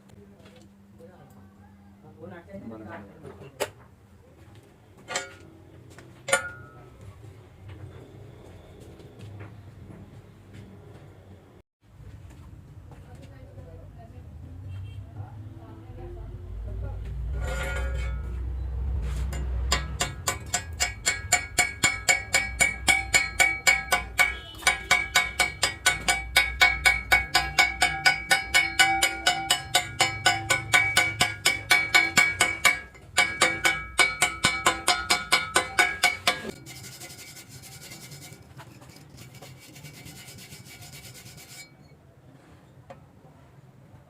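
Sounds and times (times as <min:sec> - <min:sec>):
hammer striking steel: 0:05.1 - 0:05.4, 0:06.3 - 0:06.8, 0:17.4 - 0:18.4, 0:19.3 - 0:38.4.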